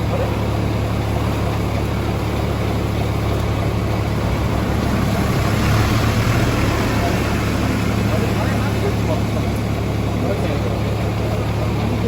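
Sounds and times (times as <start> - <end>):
truck engine humming: 0.0 - 12.0.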